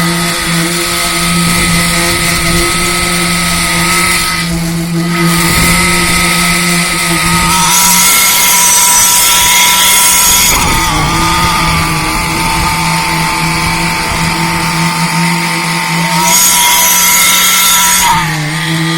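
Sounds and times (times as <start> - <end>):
construction machine engine running: 0.0 - 7.8, 9.9 - 16.2.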